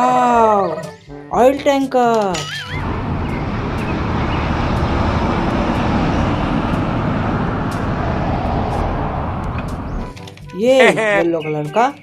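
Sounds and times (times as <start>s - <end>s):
road noise: 1.4s - 10.5s
truck engine running: 2.6s - 10.1s.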